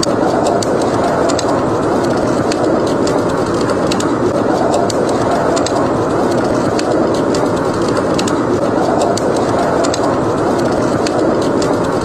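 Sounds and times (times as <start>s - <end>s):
rushing blizzard wind: 0.0s - 12.0s
wood fire crackling and popping: 0.0s - 12.0s.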